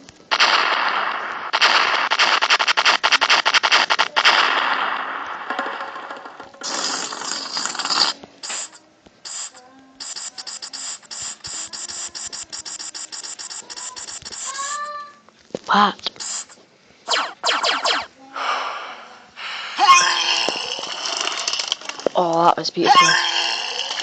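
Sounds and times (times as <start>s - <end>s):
loud crackling noise with clicks: 0.0s - 14.9s, 16.0s - 18.1s, 20.4s - 22.4s, 23.4s - 24.0s
stuttering bursts of noise: 0.3s - 5.0s, 6.6s - 14.9s, 16.1s - 18.2s
burst of hiss: 6.6s - 14.8s, 16.2s - 16.6s.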